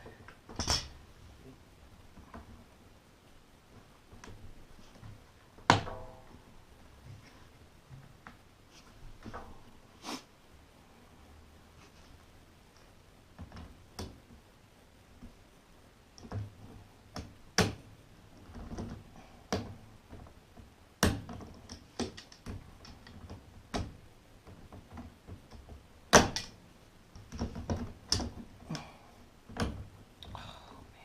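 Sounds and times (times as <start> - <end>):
plastic parts knocking and clicking: 18.4 - 26.6, 27.2 - 28.8.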